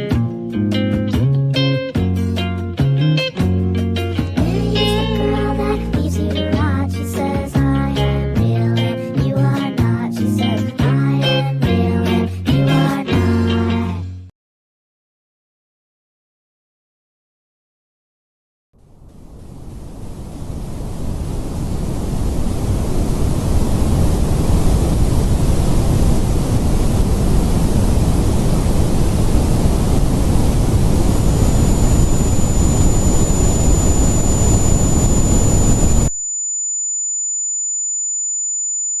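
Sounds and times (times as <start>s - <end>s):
loud rumbling noise: 19.4s - 36.1s
high-pitched ringing tone: 30.6s - 39.0s.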